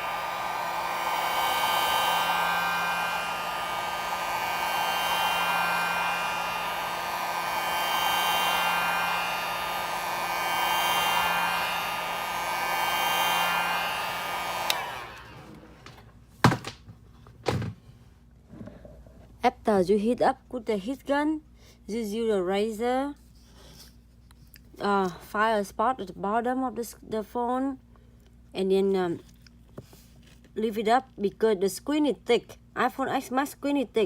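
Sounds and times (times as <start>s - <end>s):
heat gun blowing hot air: 0.0s - 16.8s
sharp knocks: 16.4s - 16.8s.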